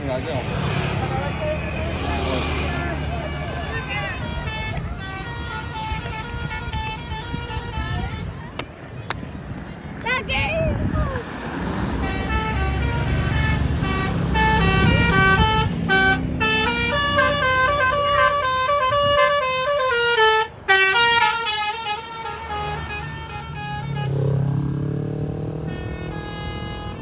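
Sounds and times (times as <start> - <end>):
bus engine running: 0.0 - 27.0
musical bus horn melody: 2.3 - 8.5, 11.8 - 27.0.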